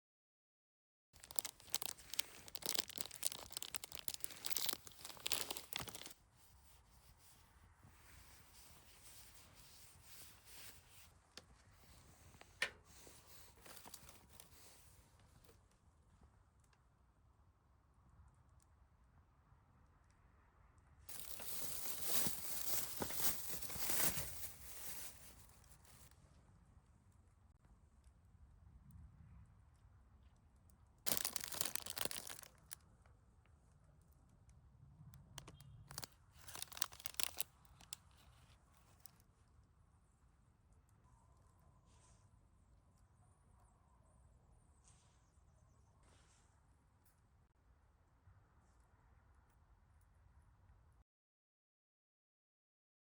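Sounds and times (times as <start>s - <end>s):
packaging clicks: 1.2s - 6.1s, 21.1s - 25.2s, 31.1s - 32.8s, 35.4s - 38.0s
plastic wrappers rustling: 1.2s - 6.2s, 12.9s - 14.8s, 21.1s - 26.1s, 31.1s - 32.8s, 35.4s - 39.1s.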